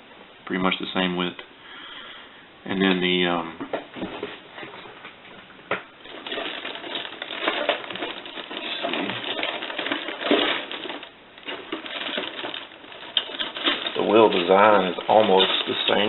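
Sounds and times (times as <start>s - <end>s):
toy car wheels rustling and clicking: 6.0s - 16.0s.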